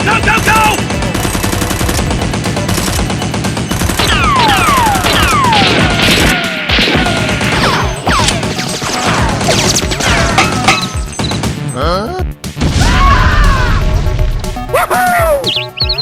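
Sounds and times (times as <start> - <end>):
rapid automatic gunfire: 0.0 - 10.9
background music: 0.0 - 16.0.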